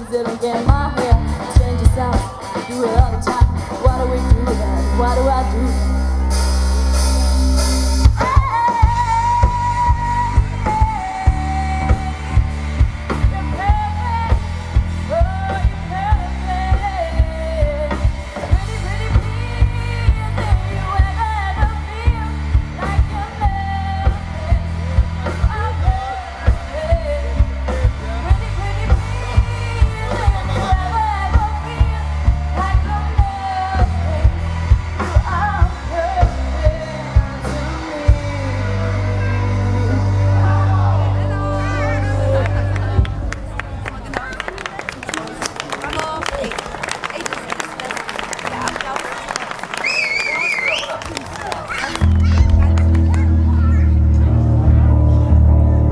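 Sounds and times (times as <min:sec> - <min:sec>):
woman singing: 0:00.0 - 0:06.0, 0:08.1 - 0:43.0
rock band playing: 0:00.0 - 0:55.9.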